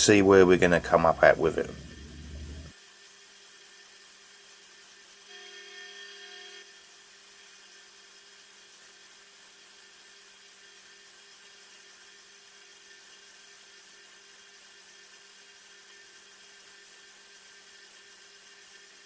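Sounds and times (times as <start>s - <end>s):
belt sander running: 0.0s - 19.0s.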